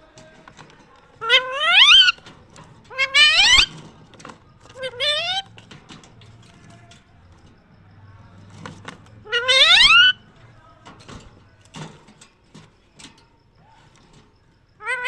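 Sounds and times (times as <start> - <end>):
parrot rising call: 9.3 - 10.2.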